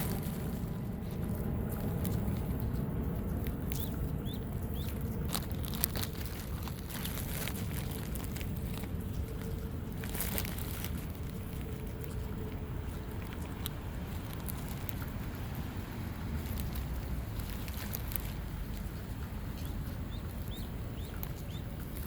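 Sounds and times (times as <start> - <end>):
ducklings peeping: 1.8 - 6.2, 18.7 - 22.0.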